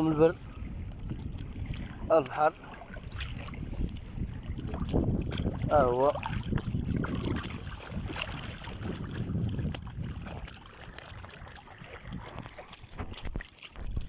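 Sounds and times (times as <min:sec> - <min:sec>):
sea noise: 0:00.0 - 0:13.8
wind: 0:00.0 - 0:14.0.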